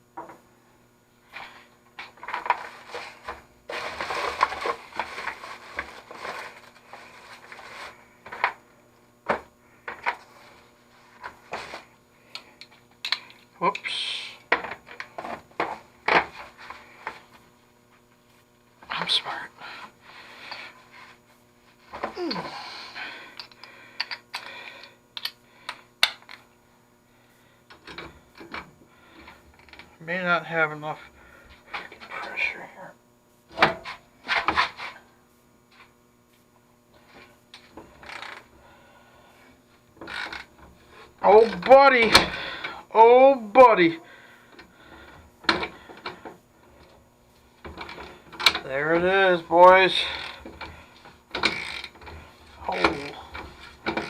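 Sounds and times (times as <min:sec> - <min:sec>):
metallic clicks of hand tools: 0:25.2 - 0:25.4
ratchet wrench clicking: 0:51.4 - 0:51.9.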